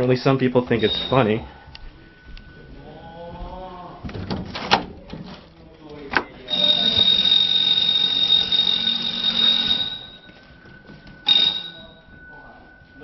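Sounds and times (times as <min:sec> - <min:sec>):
high-pitched electronic alarm tone: 0:00.7 - 0:03.7, 0:06.4 - 0:13.0.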